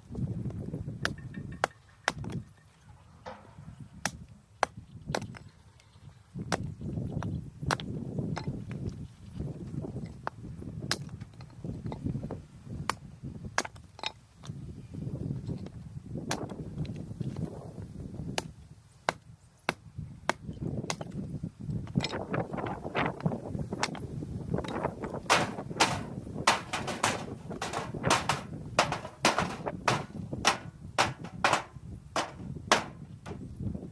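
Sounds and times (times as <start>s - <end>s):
firewood cracking and knocking: 24.6s - 33.6s
low uneven rumbling: 24.6s - 33.9s.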